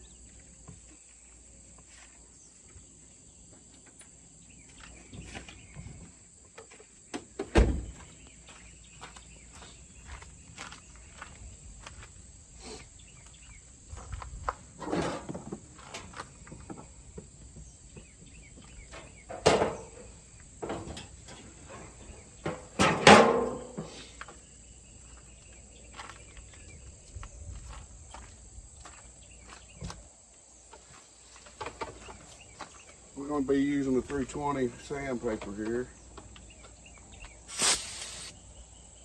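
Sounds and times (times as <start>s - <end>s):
crickets chirring: 0.0s - 39.0s
metal car parts clicking and clunking: 14.8s - 16.2s, 18.8s - 23.9s.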